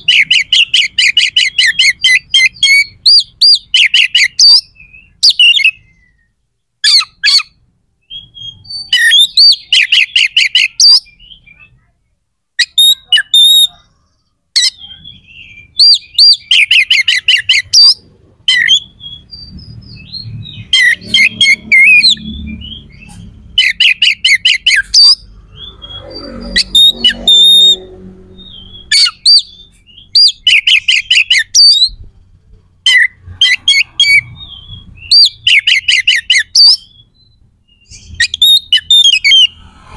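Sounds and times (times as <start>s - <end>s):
bird singing harsh notes: 0.0s - 12.0s, 12.6s - 39.9s.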